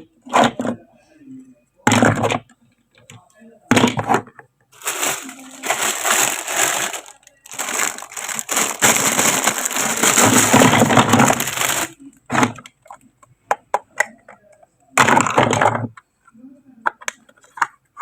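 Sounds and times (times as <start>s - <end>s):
packaging crinkling: 4.8s - 12.6s.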